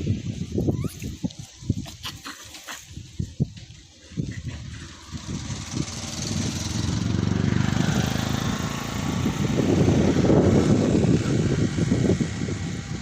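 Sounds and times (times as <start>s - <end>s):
engine running: 4.4s - 13.0s.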